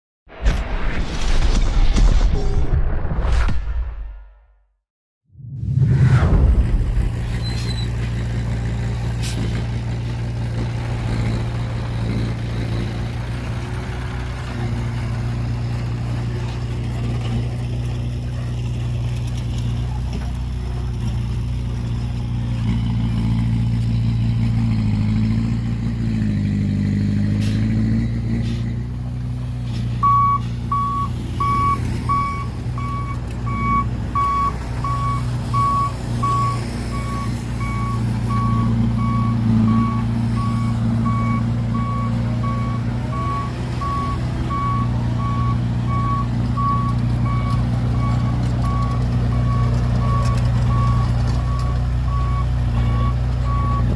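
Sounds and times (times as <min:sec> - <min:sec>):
heavy machinery diesel engine: 0:06.2 - 0:53.9
reversing alarm beeping: 0:30.0 - 0:53.9.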